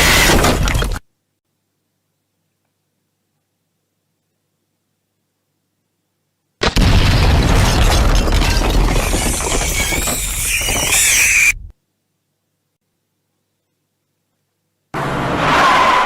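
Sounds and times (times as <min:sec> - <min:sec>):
explosion blast: 0:06.6 - 0:10.3.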